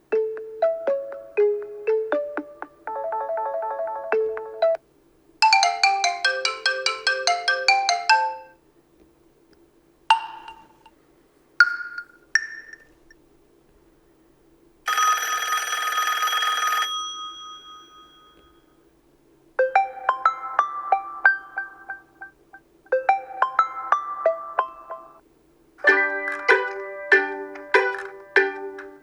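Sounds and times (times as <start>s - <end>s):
quick run of bright notes: 25.8s - 29.0s.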